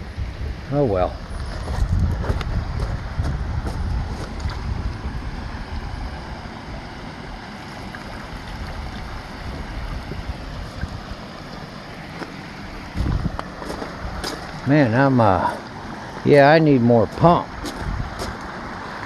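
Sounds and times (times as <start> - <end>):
wind rumbling on microphone: 0.0 - 11.7, 12.8 - 14.8, 17.1 - 18.5.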